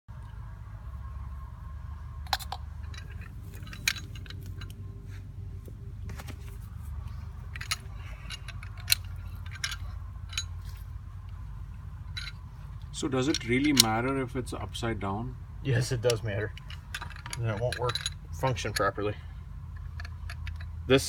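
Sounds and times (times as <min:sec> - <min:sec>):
low rumble: 0:00.1 - 0:21.0
metal parts clicking: 0:02.2 - 0:04.8, 0:07.0 - 0:10.9, 0:12.0 - 0:14.3, 0:16.0 - 0:21.0.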